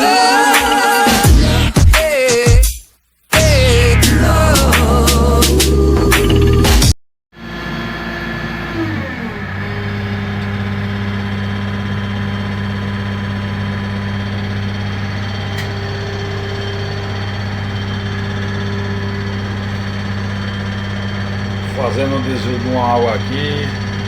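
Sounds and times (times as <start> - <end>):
diesel engine idling: 7.4 - 24.0.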